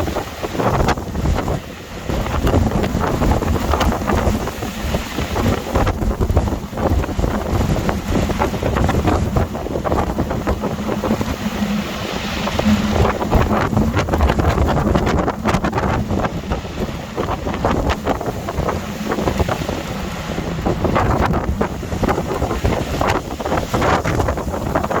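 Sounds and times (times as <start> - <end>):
strong wind buffeting microphone: 0.0 - 25.0.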